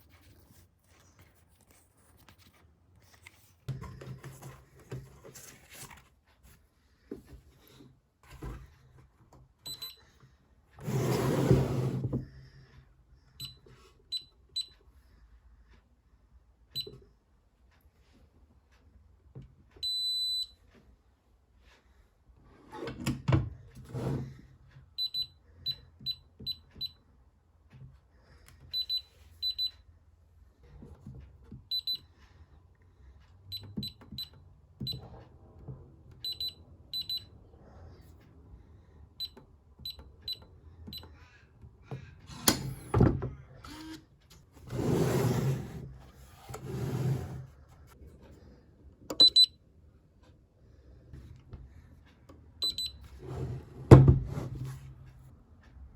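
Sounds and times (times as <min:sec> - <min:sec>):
electronic keypad beeps: 0:49.1 - 0:49.6, 0:52.6 - 0:53.0.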